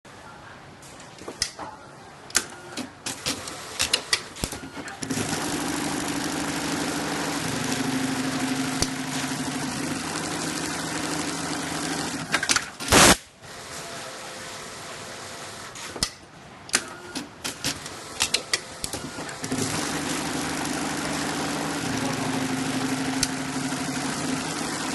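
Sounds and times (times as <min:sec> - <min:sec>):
sewing machine stitching: 0:02.4 - 0:13.2, 0:17.1 - 0:24.9.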